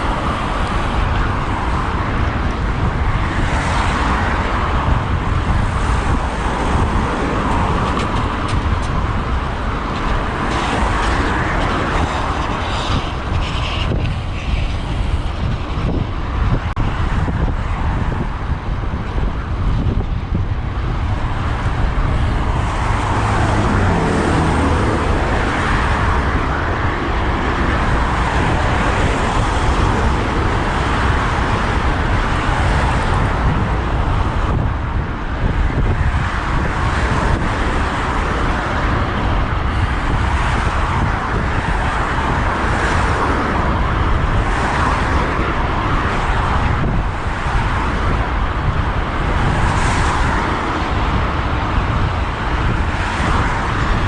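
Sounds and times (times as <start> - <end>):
cars passing by: 0.0 - 54.0
road traffic noise: 0.0 - 54.0.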